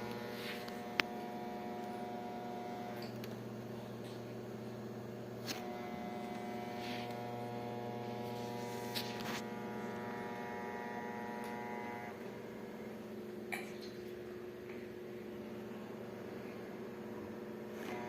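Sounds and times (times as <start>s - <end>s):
projector mechanical hum: 0.0s - 18.0s.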